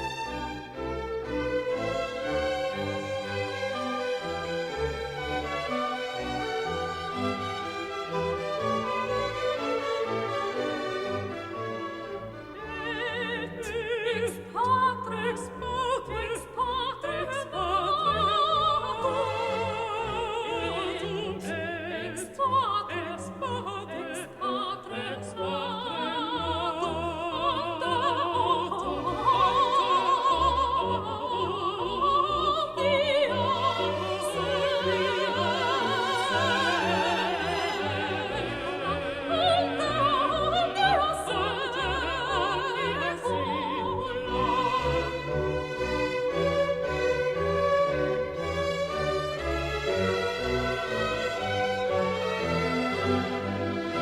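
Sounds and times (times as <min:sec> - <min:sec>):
orchestral accompaniment: 0:00.0 - 0:54.0
operatic singing voice: 0:12.5 - 0:45.6.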